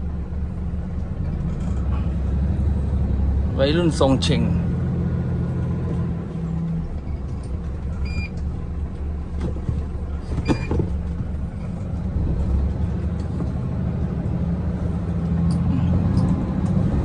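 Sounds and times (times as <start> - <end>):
diesel truck engine rumbling: 0.0 - 17.0.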